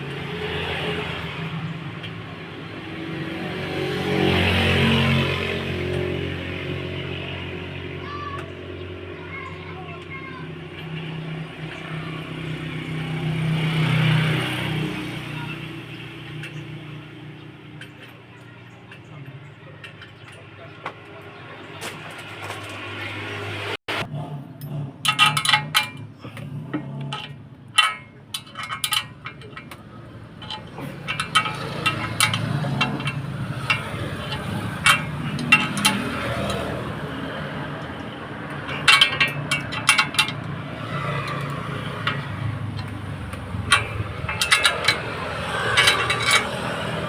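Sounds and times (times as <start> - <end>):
sharp clinks and taps: 26.8 - 47.0.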